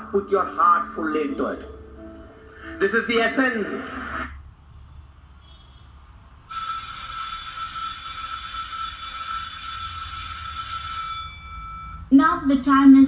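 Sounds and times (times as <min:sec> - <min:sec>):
electric bell ringing: 0:06.5 - 0:12.2.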